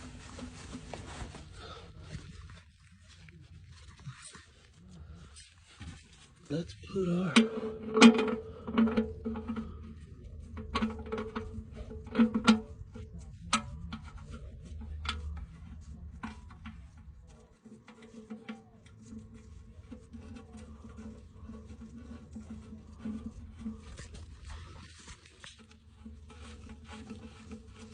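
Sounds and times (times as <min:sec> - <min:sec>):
sharp clicks and knocks: 0:07.3 - 0:27.9.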